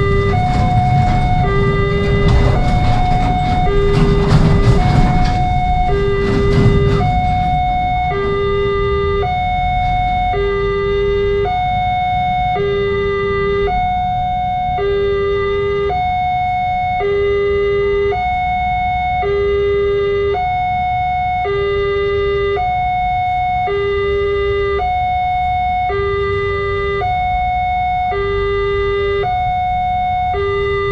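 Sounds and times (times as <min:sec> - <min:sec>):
low rumble: 0:00.0 - 0:12.4
two-tone level crossing siren: 0:00.0 - 0:30.9.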